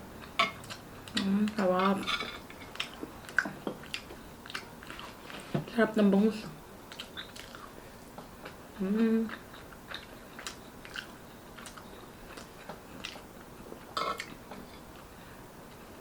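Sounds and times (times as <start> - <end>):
chewing and mouth smacks: 2.7 - 5.4, 6.9 - 8.6, 9.3 - 13.5, 14.1 - 15.1.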